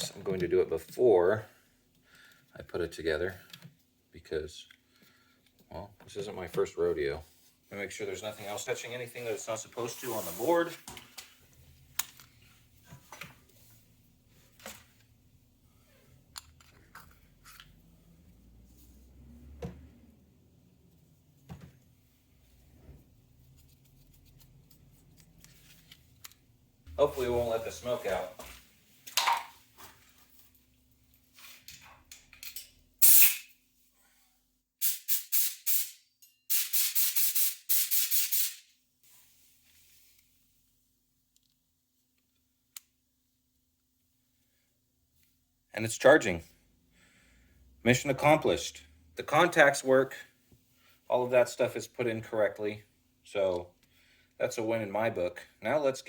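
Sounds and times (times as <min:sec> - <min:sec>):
handling scrapes and rustles: 0:07.1 - 0:11.4, 0:27.0 - 0:31.8.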